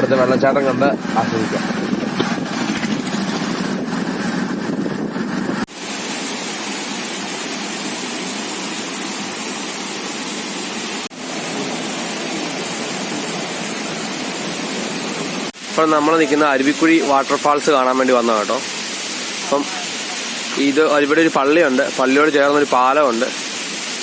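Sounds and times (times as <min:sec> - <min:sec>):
waterfall rushing: 0:05.6 - 0:24.0.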